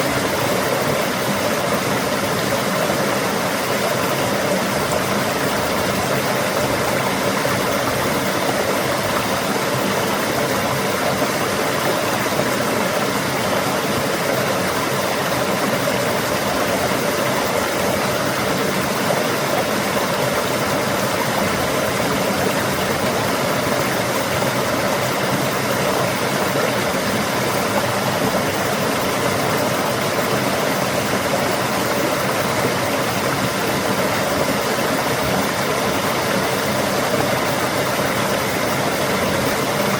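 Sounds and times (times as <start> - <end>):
water rushing: 0.0 - 39.9.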